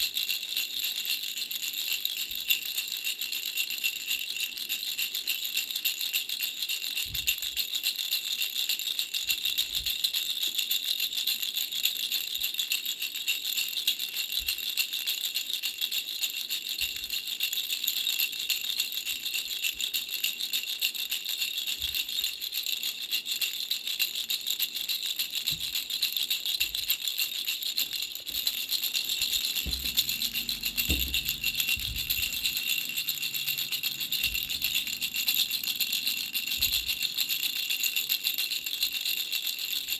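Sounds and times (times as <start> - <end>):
baby bell rattle jingling: 0.0 - 39.9
soft handling knocks: 29.2 - 35.4.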